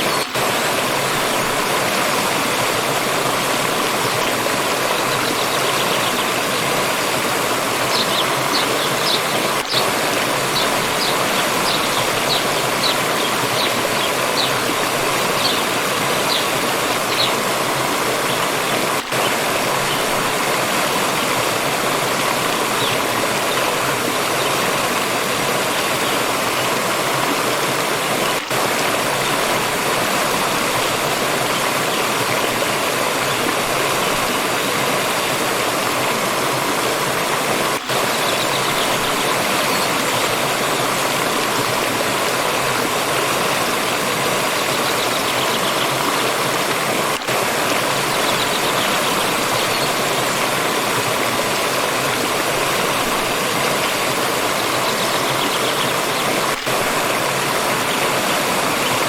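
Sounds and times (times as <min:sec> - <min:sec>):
stream water rushing: 0:00.0 - 0:59.0
bird chirping: 0:07.9 - 0:14.6.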